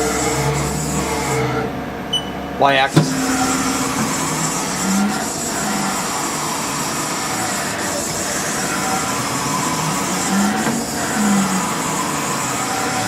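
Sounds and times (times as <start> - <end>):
machine hum and hiss: 3.0 - 12.6.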